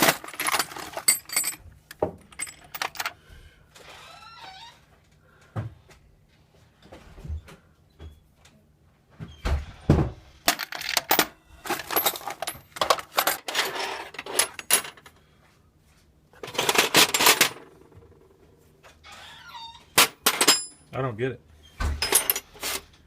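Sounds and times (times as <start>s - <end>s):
metal tools clinking: 0.0s - 1.6s, 2.2s - 3.2s, 10.5s - 15.1s, 20.0s - 20.9s, 21.9s - 22.9s.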